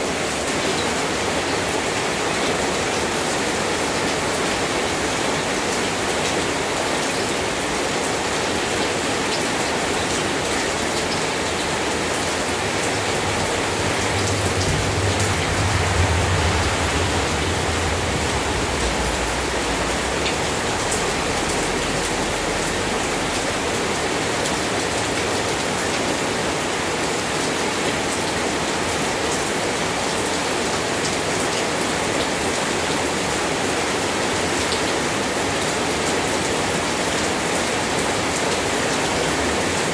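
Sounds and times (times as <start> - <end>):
steady rain falling: 8.7 - 25.8
low rumble: 10.4 - 25.2.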